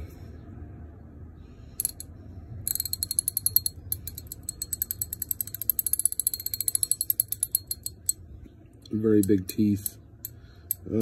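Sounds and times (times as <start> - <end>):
ratchet wrench clicking: 1.8 - 2.1, 2.7 - 8.2, 9.2 - 11.0.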